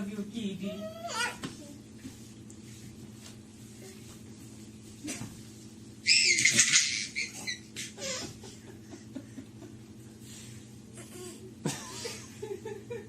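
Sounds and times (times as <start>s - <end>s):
baby squealing: 6.0s - 7.6s.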